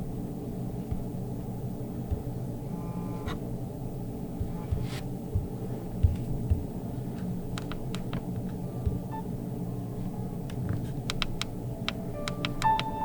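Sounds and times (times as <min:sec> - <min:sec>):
low hum and rumble: 0:00.0 - 0:13.0
light clicks: 0:07.2 - 0:09.0, 0:10.4 - 0:12.9.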